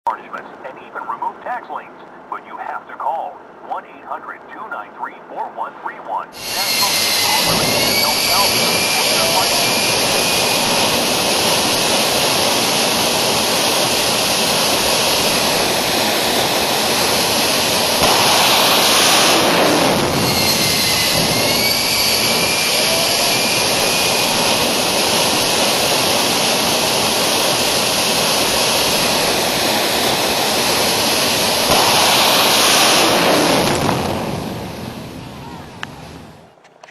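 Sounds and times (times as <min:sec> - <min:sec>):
high engine whine: 0:06.3 - 0:36.6
turbocharged engine rushing: 0:06.4 - 0:36.4.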